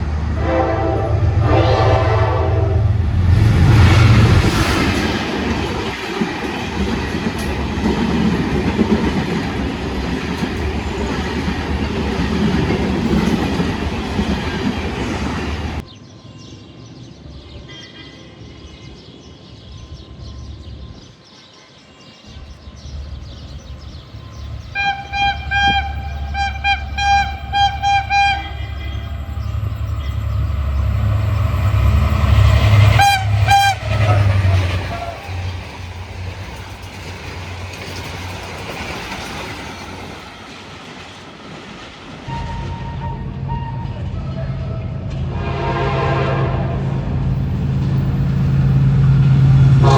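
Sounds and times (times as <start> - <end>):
low rumble of approaching train: 0.0 - 49.9
train passing with rumble and rattle: 0.0 - 49.9
train horn blasts: 0.3 - 3.1, 24.7 - 35.4, 42.3 - 47.1, 49.5 - 49.9.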